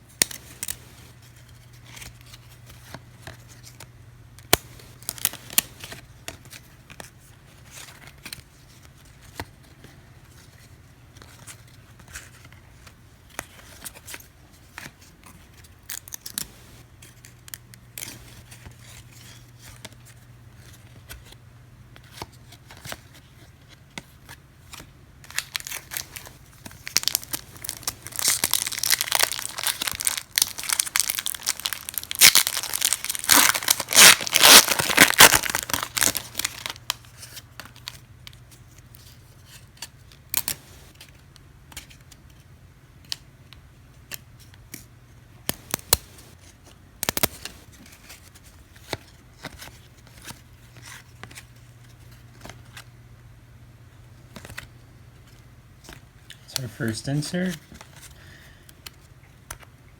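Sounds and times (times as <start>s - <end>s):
cards being flipped through: 0.2s - 3.9s, 4.5s - 21.4s, 22.0s - 38.0s, 39.0s - 42.4s, 45.4s - 52.9s, 54.2s - 59.7s
wrapper tearing and crinkling: 4.6s - 6.0s, 25.3s - 37.2s, 45.5s - 46.4s.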